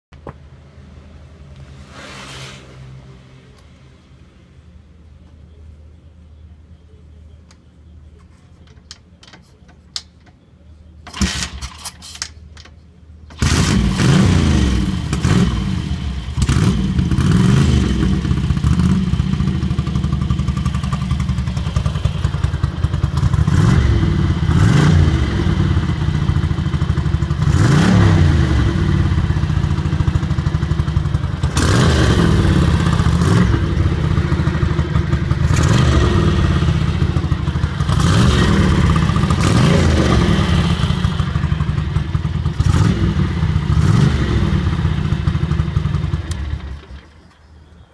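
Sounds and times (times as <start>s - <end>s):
motorcycle engine revving: 13.3s - 47.1s.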